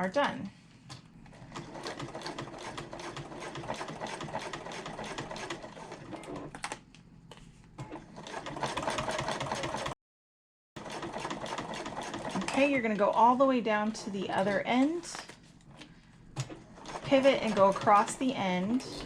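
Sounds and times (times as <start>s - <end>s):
sewing machine stitching: 1.3s - 6.6s, 7.8s - 10.0s, 10.8s - 13.1s, 16.4s - 19.0s.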